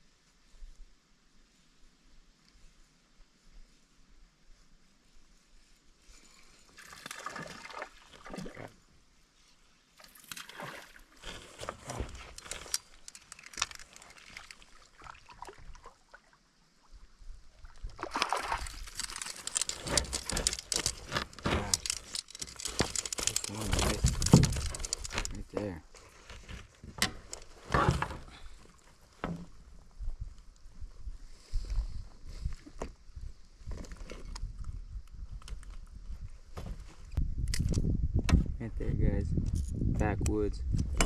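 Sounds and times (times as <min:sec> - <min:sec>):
water sloshing against kayak: 0:10.0 - 0:25.4.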